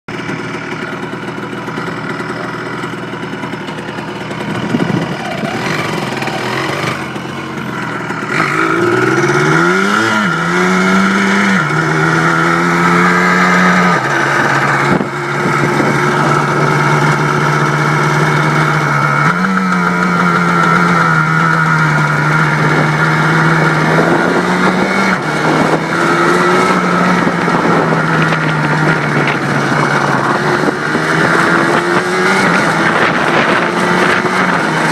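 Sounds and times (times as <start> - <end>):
two-stroke engine revving: 0.1 - 34.9.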